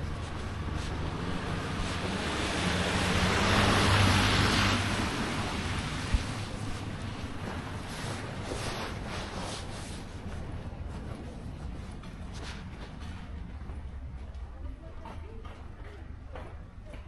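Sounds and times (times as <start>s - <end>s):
vehicle driving past: 0.0s - 8.5s.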